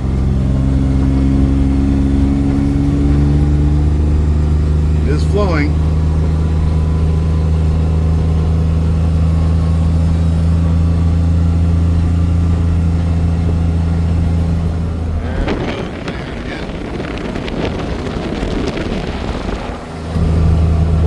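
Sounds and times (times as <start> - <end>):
car engine droning: 0.0 - 21.0.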